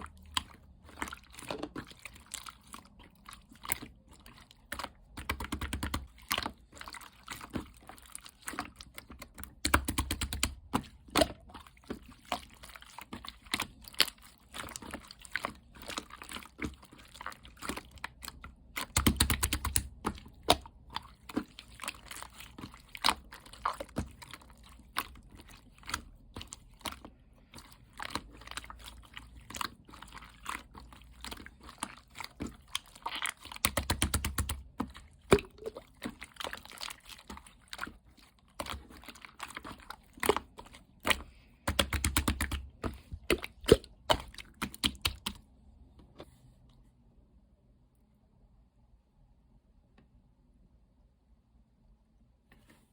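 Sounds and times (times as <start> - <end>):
slime clicking and crackling: 0.0 - 45.4
slime squelching: 0.0 - 45.8.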